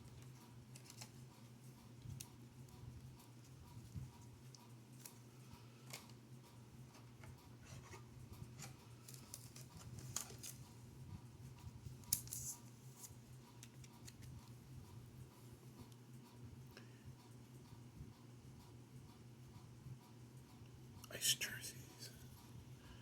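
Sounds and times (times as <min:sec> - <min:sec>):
trading cards clicking and scraping: 0:00.7 - 0:01.2, 0:07.0 - 0:10.7, 0:12.1 - 0:14.4
card rustle: 0:07.0 - 0:10.7, 0:12.1 - 0:14.3.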